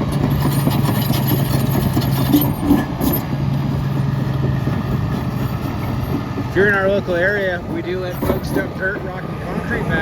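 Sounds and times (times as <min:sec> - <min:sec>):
sharp metal clanks: 0:00.0 - 0:03.4
bulldozer diesel engine running: 0:00.0 - 0:10.0.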